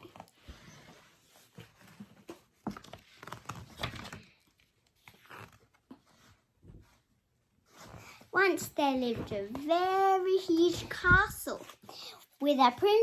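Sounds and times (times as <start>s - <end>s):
book pages turning: 0.0s - 7.0s, 7.7s - 13.0s
paper rustling: 0.0s - 7.0s.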